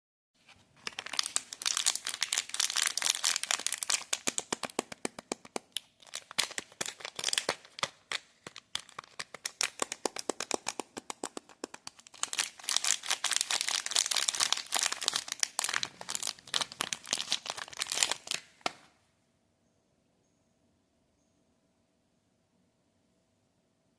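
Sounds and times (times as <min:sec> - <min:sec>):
soap wrappers crinkling: 0:00.6 - 0:18.9
wrapper tearing: 0:00.8 - 0:05.1, 0:05.8 - 0:18.9.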